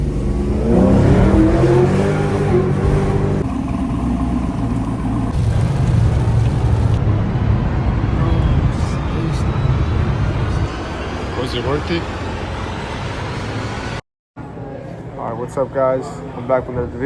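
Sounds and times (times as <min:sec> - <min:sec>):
car engine revving through gears: 0:00.0 - 0:05.4.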